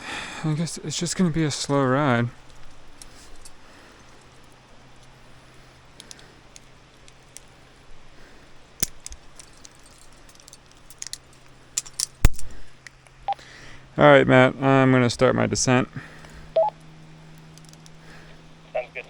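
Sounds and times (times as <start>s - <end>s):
carabiners clicking: 8.8s - 13.0s, 17.4s - 18.0s.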